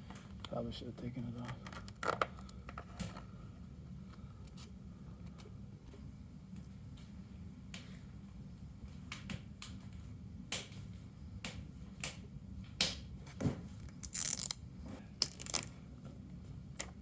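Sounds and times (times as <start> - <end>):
sticker crinkling: 13.8 - 14.6, 15.2 - 15.8.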